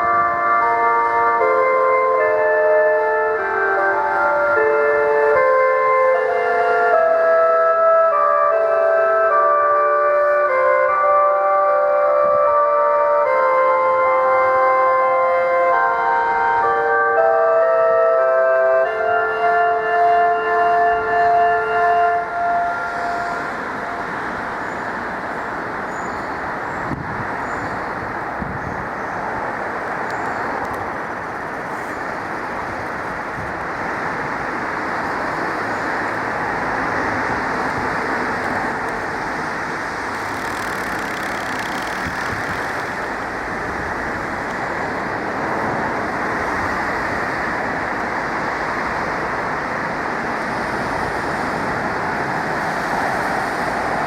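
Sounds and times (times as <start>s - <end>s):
cars passing: 0.0s - 54.0s.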